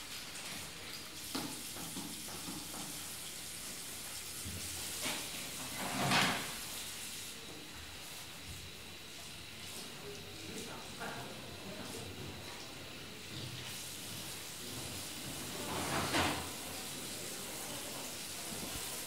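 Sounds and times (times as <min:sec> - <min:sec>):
steady hiss: 0:12.7 - 0:19.0.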